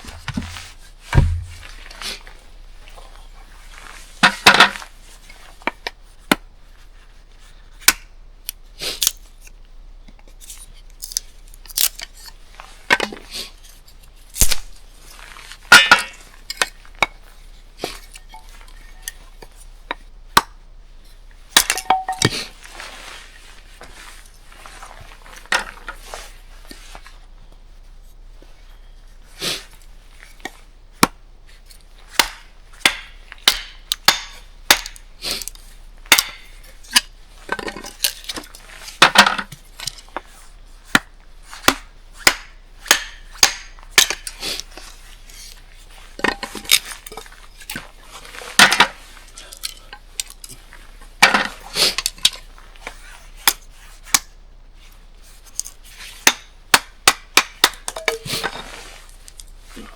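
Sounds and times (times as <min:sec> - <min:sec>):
camp gear knocking and clinking: 0:00.0 - 0:01.9, 0:21.6 - 0:22.5, 0:57.2 - 0:58.8.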